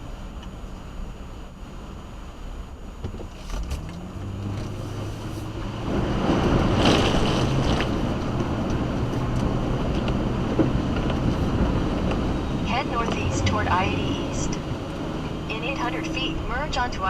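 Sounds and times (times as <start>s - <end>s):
car engine running: 0.0s - 17.0s
water spraying off tyres: 4.7s - 9.4s.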